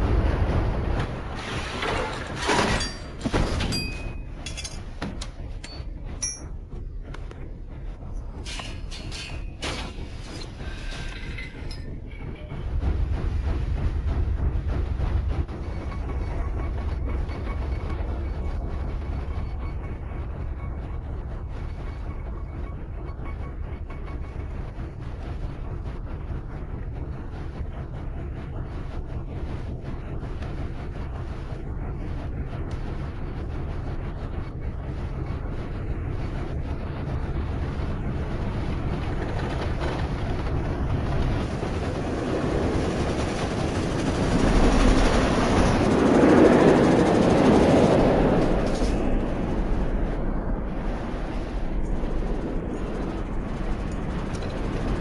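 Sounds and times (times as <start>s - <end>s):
steam train rumbling and clattering: 0.0s - 55.0s.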